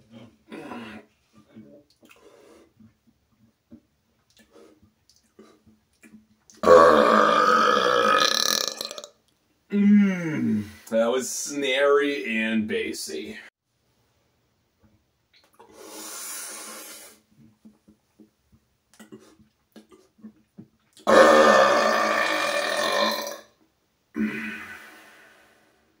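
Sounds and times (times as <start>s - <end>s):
man burping: 6.6s - 9.1s, 9.7s - 10.6s, 21.0s - 23.4s, 24.2s - 24.7s.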